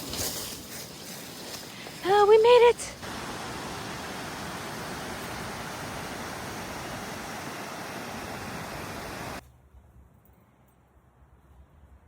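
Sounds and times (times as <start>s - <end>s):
water rushing over a dam: 3.0s - 9.4s.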